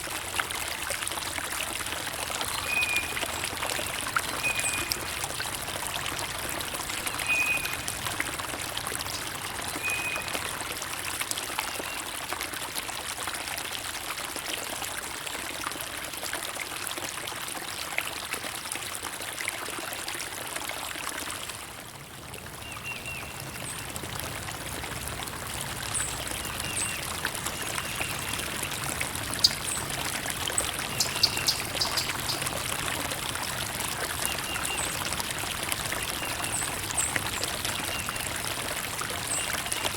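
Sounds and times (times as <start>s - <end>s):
water trickling and splashing: 0.0s - 39.9s
bird chirps: 30.9s - 32.4s.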